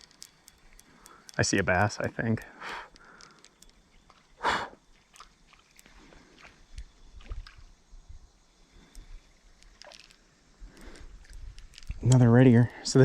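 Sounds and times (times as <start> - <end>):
small clicks and handling knocks: 0.0 - 4.2, 10.8 - 12.3
creek water sloshing: 4.0 - 7.8.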